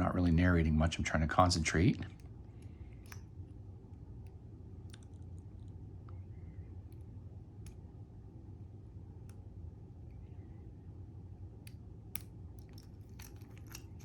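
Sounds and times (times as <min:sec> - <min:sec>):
low steady hum: 0:00.0 - 0:14.0
faint lock pick clicks: 0:02.2 - 0:03.3, 0:11.6 - 0:14.0.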